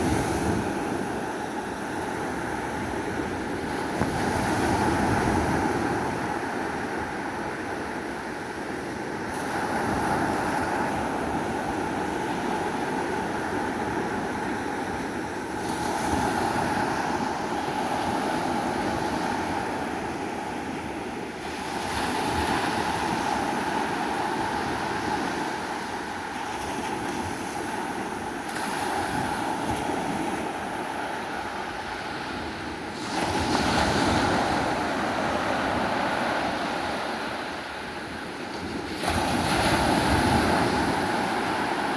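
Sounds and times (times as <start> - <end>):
sea waves washing onto beach: 0.0 - 41.9.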